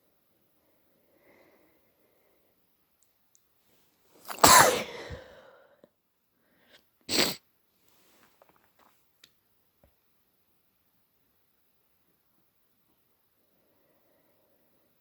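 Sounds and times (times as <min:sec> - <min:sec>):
man sneezing: 0:04.3 - 0:05.4.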